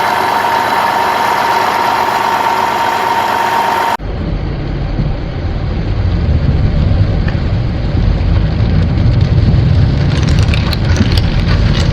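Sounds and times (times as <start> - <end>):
low engine-like rumble: 4.0 - 11.9.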